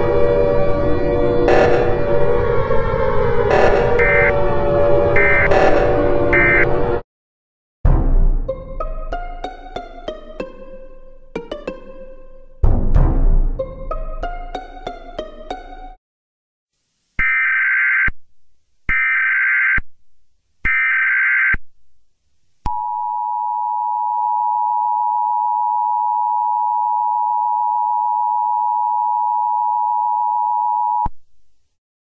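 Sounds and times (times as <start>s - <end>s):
two-tone alert signal: 1.5s - 2.2s, 3.5s - 4.4s, 5.2s - 7.0s
buzzing digital data bursts: 3.5s - 4.3s, 5.2s - 6.7s.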